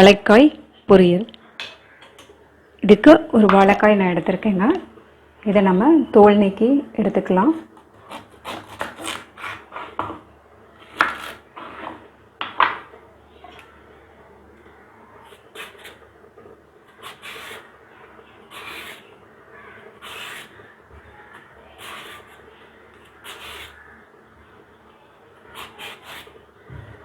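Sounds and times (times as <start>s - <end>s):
blade scraping plantain skin: 8.0s - 10.0s.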